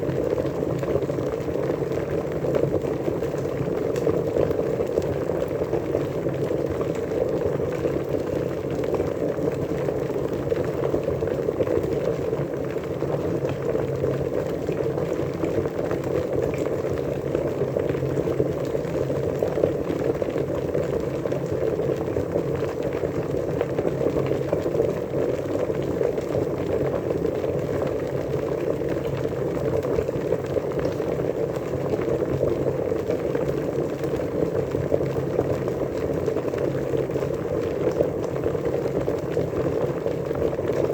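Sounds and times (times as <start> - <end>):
water bubbling at a rolling boil: 0.0 - 40.9.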